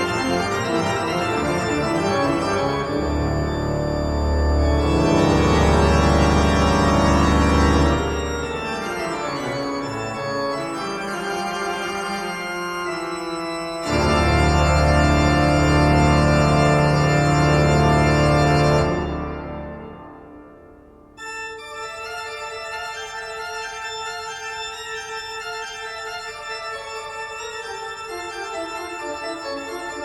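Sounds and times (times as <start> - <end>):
keyboard chords with heavy bass: 0.0 - 9.1, 13.8 - 21.0.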